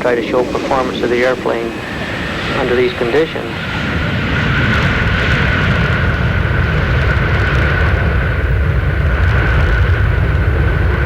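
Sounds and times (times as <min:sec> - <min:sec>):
jet engines running: 0:00.0 - 0:11.0.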